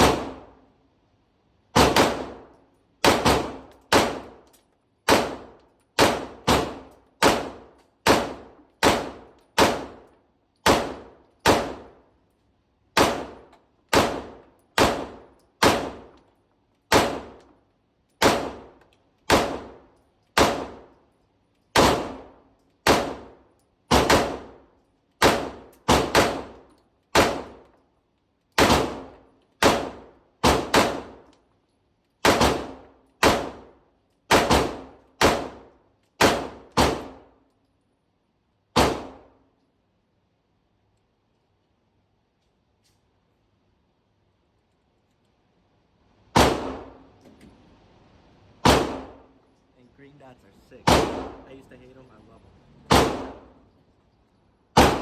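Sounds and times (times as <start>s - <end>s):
pistol shots: 0.0s - 0.6s, 1.8s - 4.4s, 5.0s - 12.0s, 13.0s - 16.2s, 16.9s - 17.5s, 18.2s - 20.9s, 21.8s - 24.6s, 25.2s - 27.7s, 28.6s - 31.3s, 32.2s - 37.4s, 38.8s - 39.4s, 46.4s - 47.2s, 48.6s - 49.4s, 50.8s - 51.7s, 52.9s - 53.6s, 54.7s - 55.0s.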